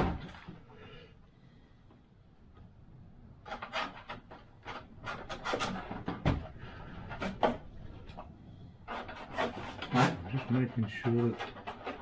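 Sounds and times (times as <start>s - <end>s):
scraping rasping strokes on plastic: 3.4s - 12.0s.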